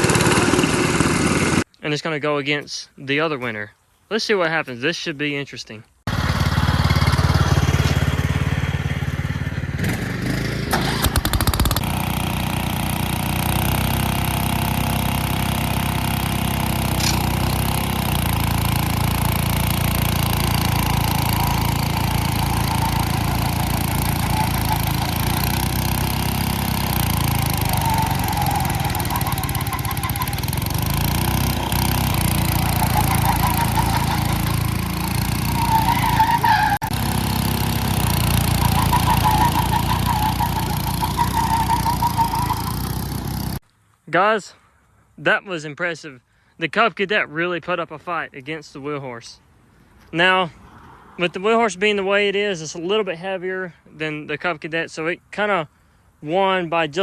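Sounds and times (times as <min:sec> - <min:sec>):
lawn tractor engines straining: 0:00.0 - 0:01.7, 0:06.1 - 0:43.6.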